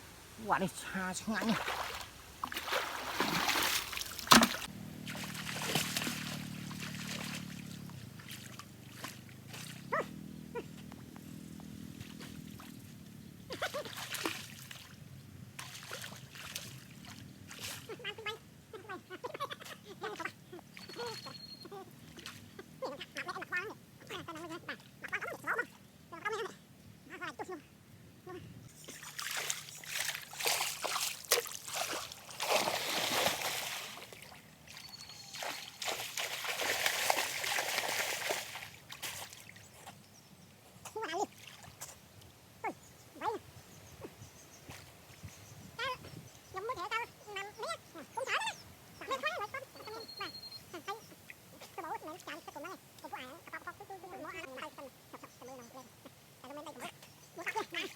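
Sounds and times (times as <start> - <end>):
water splashing: 0.0 - 9.8, 28.8 - 39.6
animal yelping: 9.5 - 10.8, 17.9 - 27.6, 34.8 - 36.6, 42.6 - 44.1, 45.8 - 57.9.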